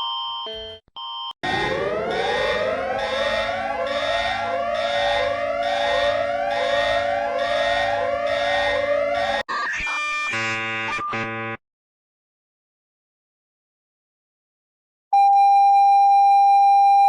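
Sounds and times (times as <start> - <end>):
electronic siren whooping: 1.4 - 9.5.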